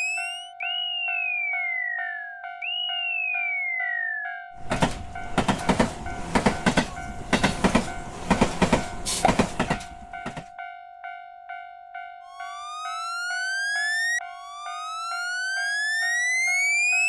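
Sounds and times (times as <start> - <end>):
falling whistle-like tone: 0.0 - 4.5, 12.3 - 17.0
railroad crossing bell ringing: 0.0 - 17.0
train wheels clattering: 4.6 - 10.5.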